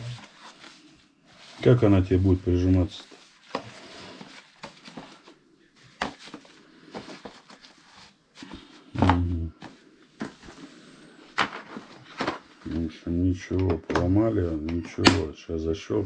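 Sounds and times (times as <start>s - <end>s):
plastic clicks and knocks: 13.6s - 15.3s.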